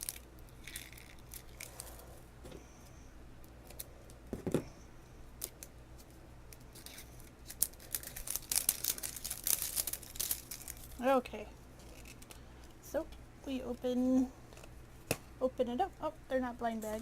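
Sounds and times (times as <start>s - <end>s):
plastic rustling: 6.7s - 12.4s.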